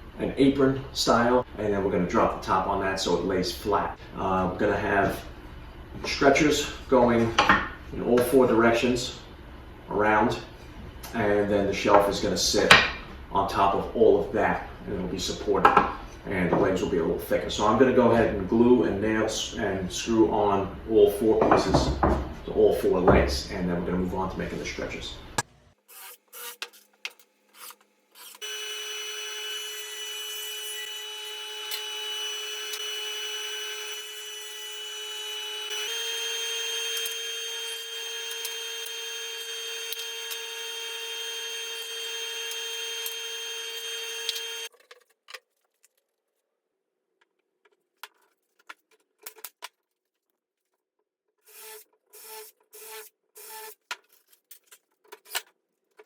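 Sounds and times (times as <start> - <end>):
power tool whining: 28.2 - 44.7.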